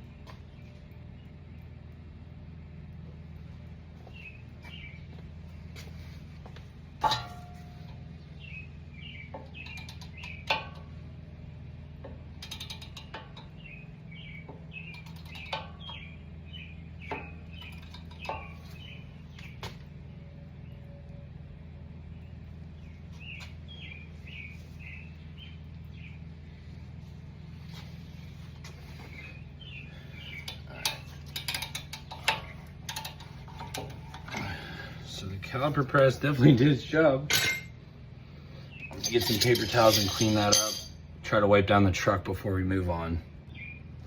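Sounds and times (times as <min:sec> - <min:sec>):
birds chirping: 0:00.0 - 0:06.9, 0:07.7 - 0:41.2, 0:42.8 - 0:44.0
steady low hum: 0:00.0 - 0:44.0
ratchet clicks: 0:12.4 - 0:13.6
metal tools knocking on caliper: 0:38.9 - 0:41.0.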